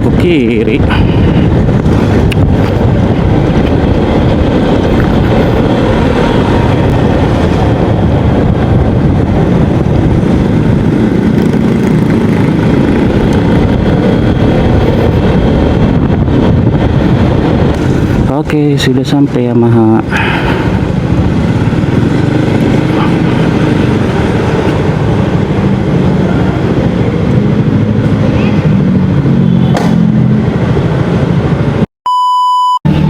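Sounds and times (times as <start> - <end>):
scooter engine and road noise: 0.0 - 31.9
wind rushing over microphone: 0.0 - 31.9.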